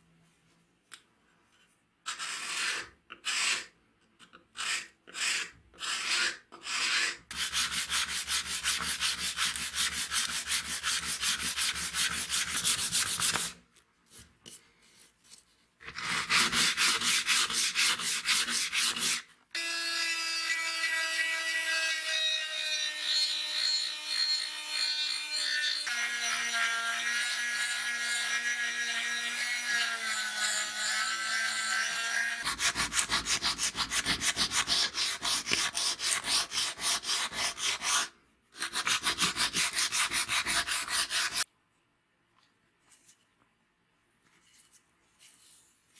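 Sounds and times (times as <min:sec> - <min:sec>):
sanding wood: 0:06.8 - 0:13.5, 0:16.2 - 0:19.2, 0:32.4 - 0:41.4.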